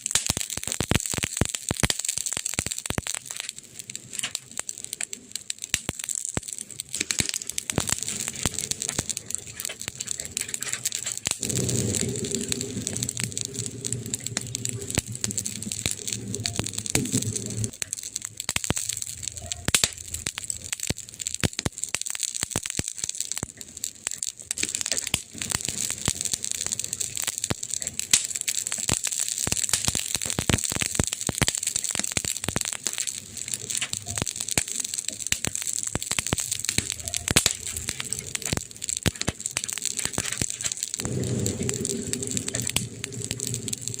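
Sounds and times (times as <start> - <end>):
campfire crackling and popping: 0.0 - 44.0
low hum: 7.8 - 17.7, 41.0 - 44.0.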